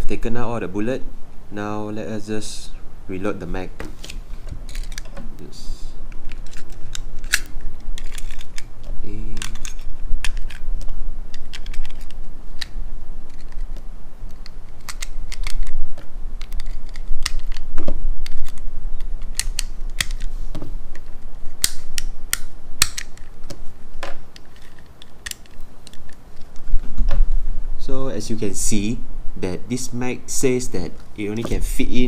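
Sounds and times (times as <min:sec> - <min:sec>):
plastic toy cartridges clicking: 0:06.3 - 0:08.7.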